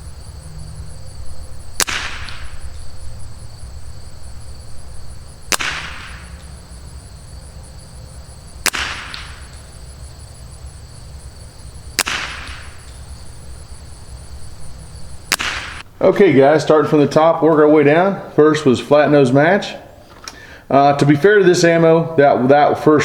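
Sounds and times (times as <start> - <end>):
insects chirping: 0.0 - 23.0
rifle shots with echo: 1.8 - 2.8, 5.5 - 6.5, 8.6 - 9.8, 11.9 - 13.1, 15.3 - 15.8.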